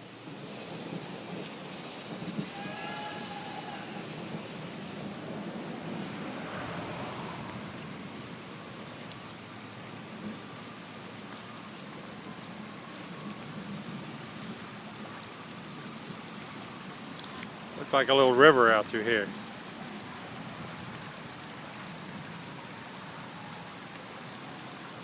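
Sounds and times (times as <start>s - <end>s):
floodwater rushing off road: 0.0s - 25.0s.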